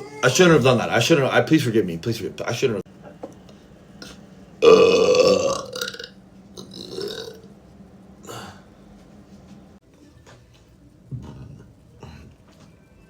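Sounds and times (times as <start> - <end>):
man burping loudly: 4.6 - 7.4.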